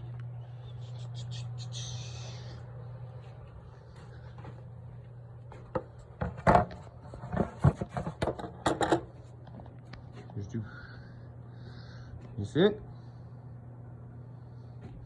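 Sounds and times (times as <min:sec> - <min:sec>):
steady low hum: 0:00.0 - 0:15.0
hard parts knocking and clunking: 0:05.7 - 0:09.2.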